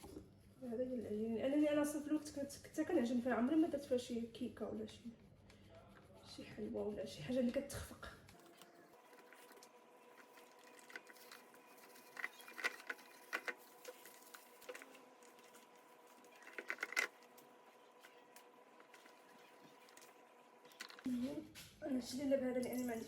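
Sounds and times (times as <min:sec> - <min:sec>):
clicks and scrapes of attachments: 0:08.3 - 0:21.1.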